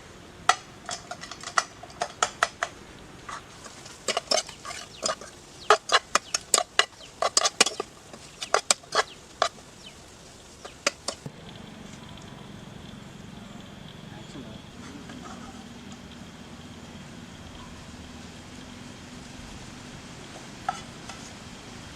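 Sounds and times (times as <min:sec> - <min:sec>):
metal spatula tapping a pan: 0:00.5 - 0:02.7, 0:04.0 - 0:09.6.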